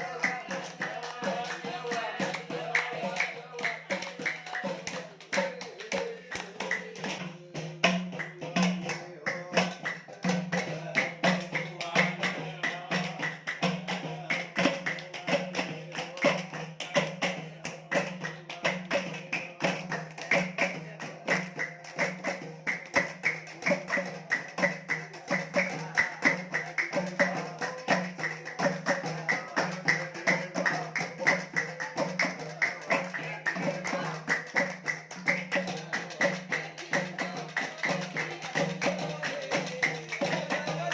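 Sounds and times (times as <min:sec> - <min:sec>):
music with hand percussion beat: 0:00.0 - 0:40.9.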